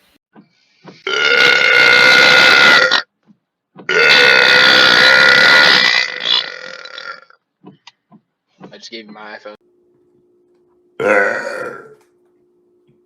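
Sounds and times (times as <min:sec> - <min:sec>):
man belching: 0:01.0 - 0:03.1, 0:03.9 - 0:07.4, 0:11.0 - 0:12.0.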